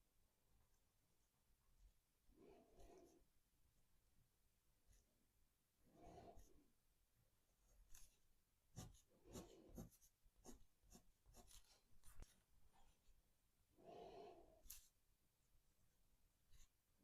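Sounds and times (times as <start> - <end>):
pen drawing on paper: 5.9 - 6.6, 7.8 - 12.9, 14.0 - 15.0.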